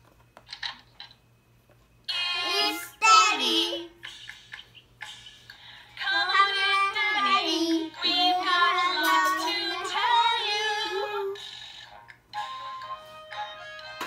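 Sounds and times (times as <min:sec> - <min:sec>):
child singing: 0:02.1 - 0:04.0, 0:06.0 - 0:11.4.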